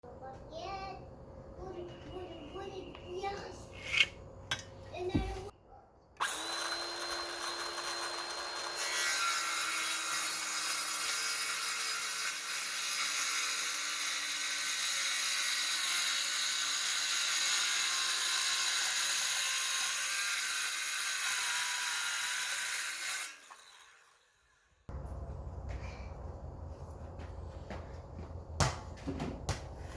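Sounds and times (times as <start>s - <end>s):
power tool cutting wood: 6.2s - 24.6s.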